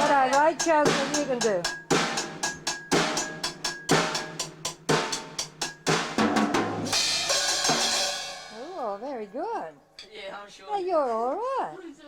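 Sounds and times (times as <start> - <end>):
snare and bass drum hits: 0.0 - 8.7
cymbal crash: 0.0 - 9.0.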